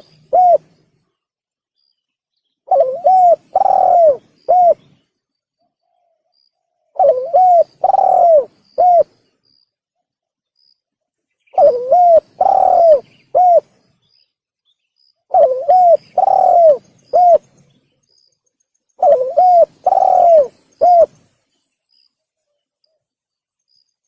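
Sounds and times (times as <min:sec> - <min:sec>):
dove cooing: 0:00.0 - 0:00.7, 0:02.7 - 0:05.0, 0:06.9 - 0:09.2, 0:11.6 - 0:13.7, 0:15.3 - 0:17.5, 0:19.0 - 0:21.2.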